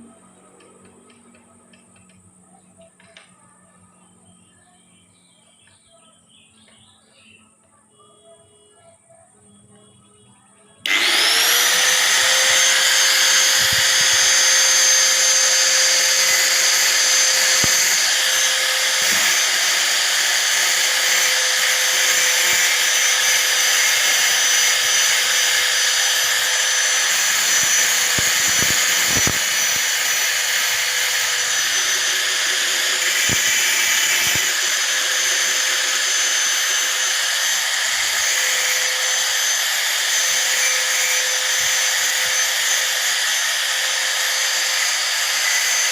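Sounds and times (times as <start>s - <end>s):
angle grinder grinding metal: 10.8s - 45.9s.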